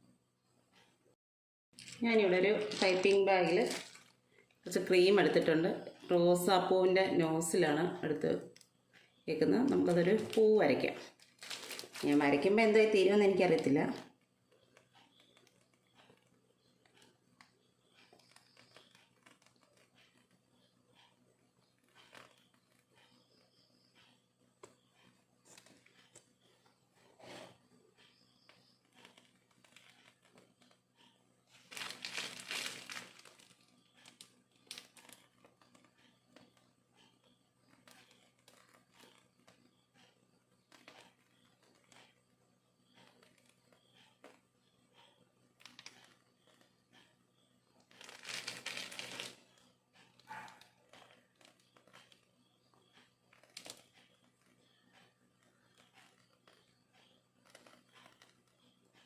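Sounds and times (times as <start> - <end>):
plastic piping bag crinkling: 1.8 - 6.2, 9.3 - 14.0, 17.9 - 20.4, 31.5 - 35.9, 47.8 - 52.2, 53.3 - 54.0, 57.4 - 58.6
faint handling sounds: 1.8 - 6.7, 8.5 - 59.0.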